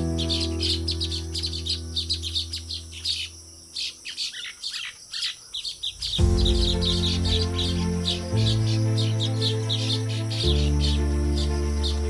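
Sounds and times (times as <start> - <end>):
low held music chord: 0.0 - 3.7, 6.1 - 12.0
weaver birds chattering: 0.0 - 12.0.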